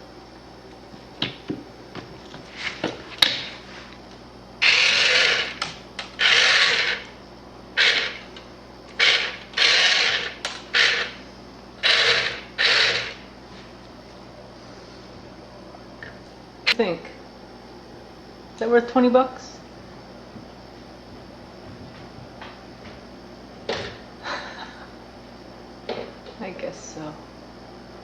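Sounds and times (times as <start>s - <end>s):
small electric motor whirring: 4.6s - 7.2s, 7.8s - 8.3s, 8.9s - 11.2s, 11.8s - 13.2s.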